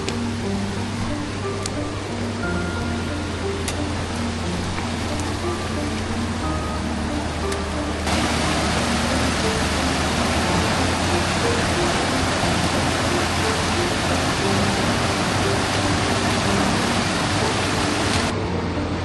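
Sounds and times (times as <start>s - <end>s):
running water rushing: 0.0s - 18.4s
quiet background music: 0.0s - 19.0s.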